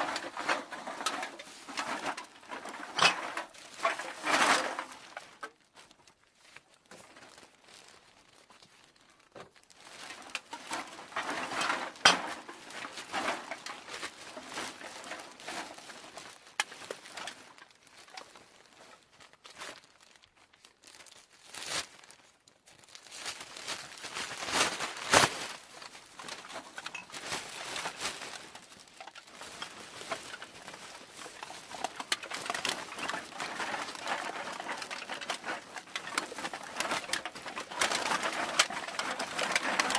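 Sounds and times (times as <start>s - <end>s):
aluminium cans clattering: 0.0s - 5.1s, 10.1s - 15.7s, 26.2s - 39.9s.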